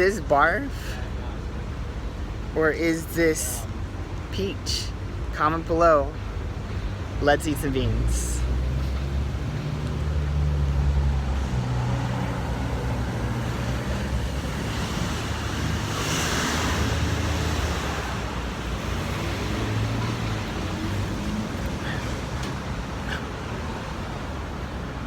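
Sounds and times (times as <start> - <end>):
low hum of traffic engines: 0.0 - 25.0
vehicle passing: 8.0 - 25.0.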